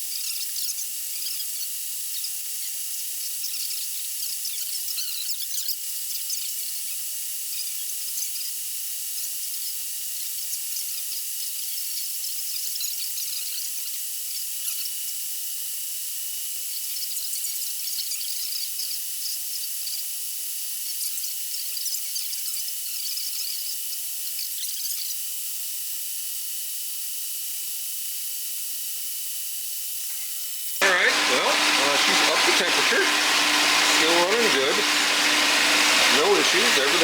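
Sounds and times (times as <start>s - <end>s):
engine mechanical whir: 30.8s - 37.0s.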